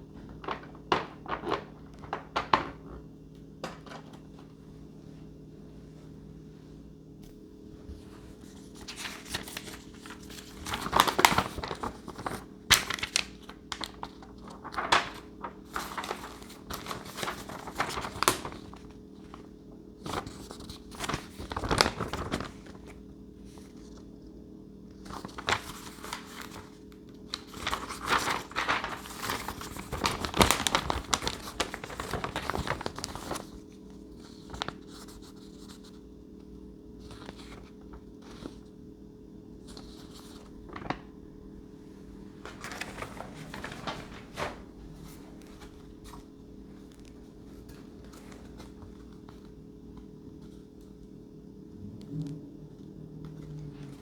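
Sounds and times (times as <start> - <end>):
plastic packaging crinkling: 0.0 - 3.0, 8.8 - 19.4, 20.1 - 22.9, 25.1 - 26.7, 27.3 - 33.6, 39.8 - 41.1, 42.4 - 44.7
steady low hum: 0.0 - 54.0.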